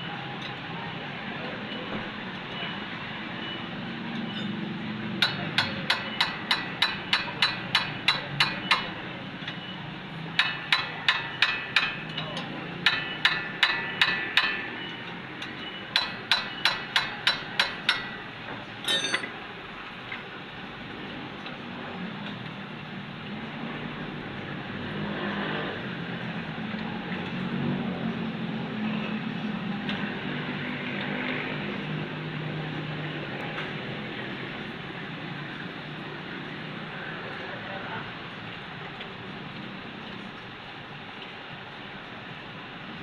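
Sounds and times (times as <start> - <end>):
hammer striking metal: 5.2 - 8.9, 10.4 - 14.7, 15.9 - 18.2, 18.8 - 19.4.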